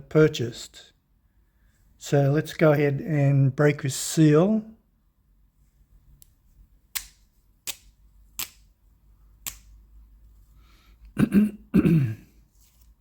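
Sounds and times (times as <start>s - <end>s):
person clearing throat: 11.2s - 12.4s.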